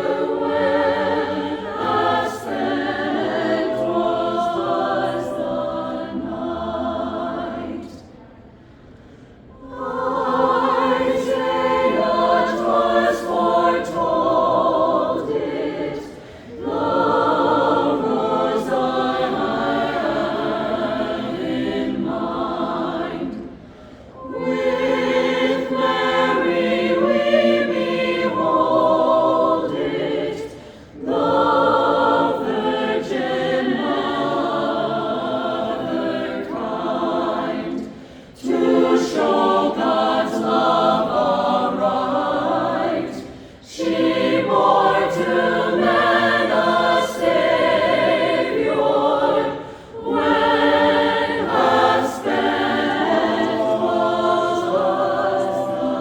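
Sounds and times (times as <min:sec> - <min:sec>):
choir singing: 0:00.0 - 0:08.3, 0:09.4 - 0:56.0.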